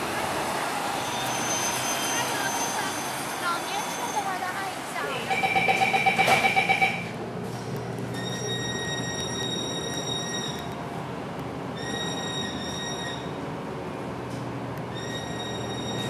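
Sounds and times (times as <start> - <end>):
bus engine running: 0.0 - 16.0
loud pulsing beep: 5.2 - 7.1.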